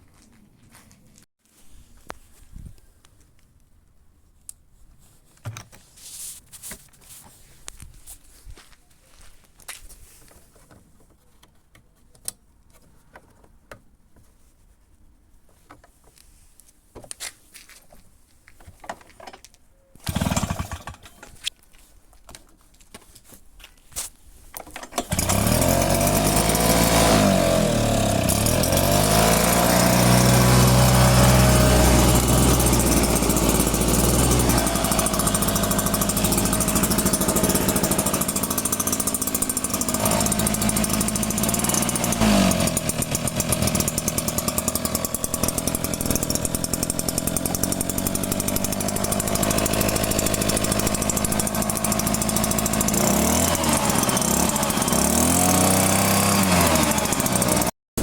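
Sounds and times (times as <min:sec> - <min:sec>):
small two-stroke engine running: 0:20.1 - 0:21.2, 0:24.9 - 0:57.7.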